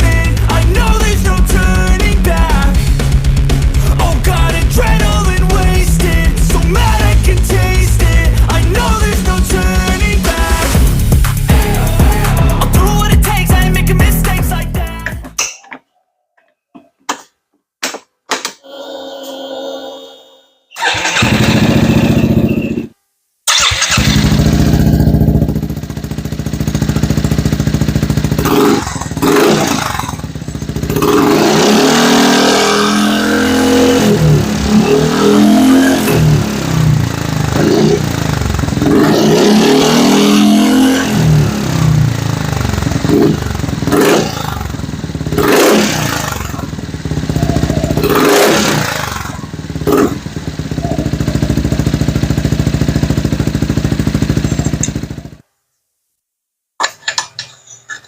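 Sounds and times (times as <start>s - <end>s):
scooter engine revving: 20.8s - 22.8s, 23.5s - 55.4s.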